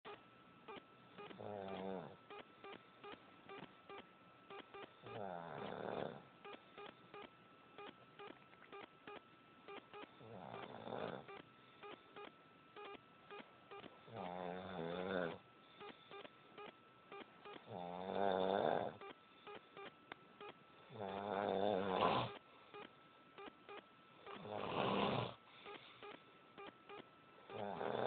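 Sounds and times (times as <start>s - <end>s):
person snoring: 1.3s - 2.2s, 5.0s - 6.3s, 10.2s - 11.4s, 14.1s - 15.4s, 17.7s - 19.0s, 20.9s - 22.4s, 24.3s - 25.4s, 27.5s - 28.0s.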